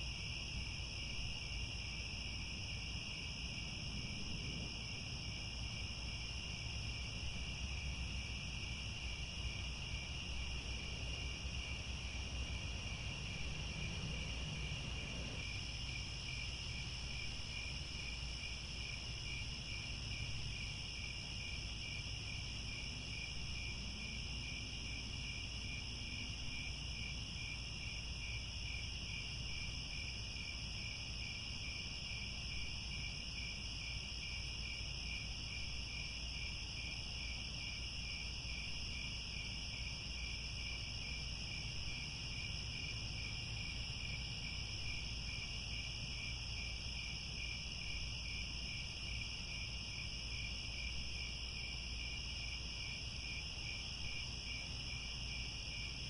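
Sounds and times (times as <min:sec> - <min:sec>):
crickets chirping: 0:00.0 - 0:56.0
faint low rumble: 0:06.4 - 0:17.6.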